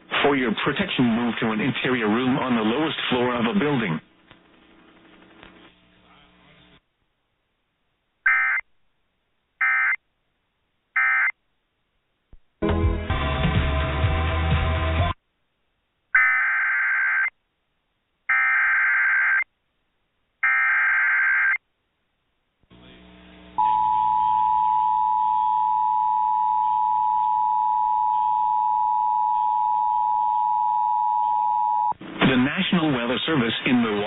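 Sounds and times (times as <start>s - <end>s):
faint receiver hiss: 2.4s - 6.6s
steady warning alarm tone: 23.6s - 31.9s.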